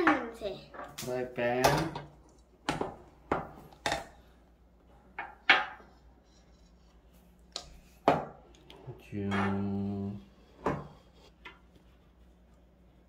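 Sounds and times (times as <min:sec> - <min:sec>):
kitchen items knocking and clattering: 0:00.0 - 0:04.2, 0:05.1 - 0:05.9, 0:08.0 - 0:08.4.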